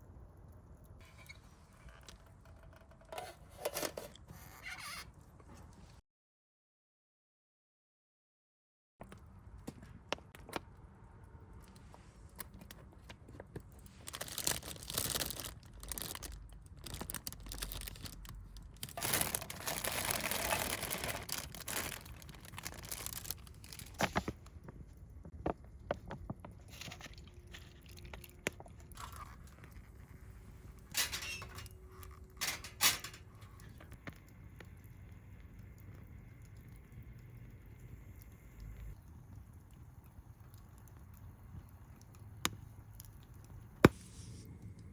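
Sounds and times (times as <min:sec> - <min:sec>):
plastic packaging crinkling: 0:13.6 - 0:24.5.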